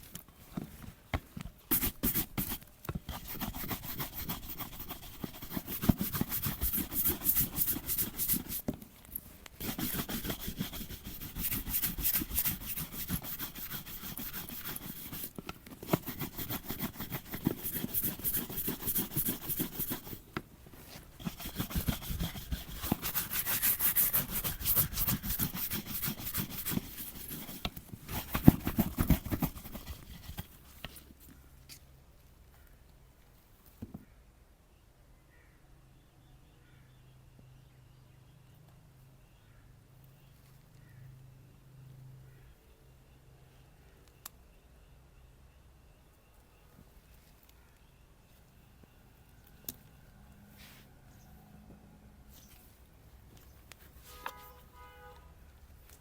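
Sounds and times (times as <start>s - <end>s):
rubbing strokes on leather boot: 1.7s - 2.6s, 3.2s - 8.7s, 9.6s - 30.7s.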